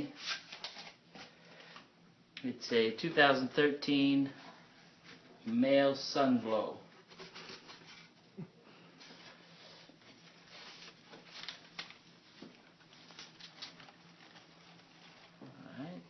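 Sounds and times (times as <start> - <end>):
faint rustling: 6.9 - 16.0.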